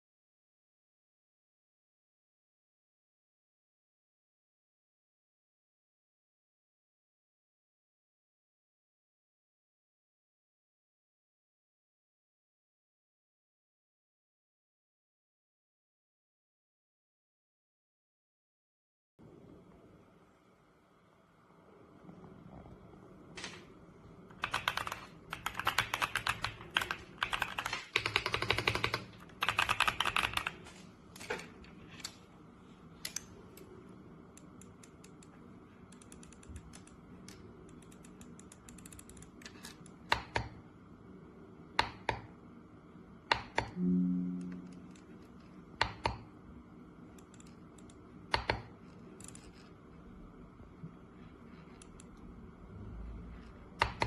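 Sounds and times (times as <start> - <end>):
mechanical keyboard typing: 24.3 - 30.6, 35.9 - 40.5, 53.8 - 54.0
short low hum: 43.8 - 45.4.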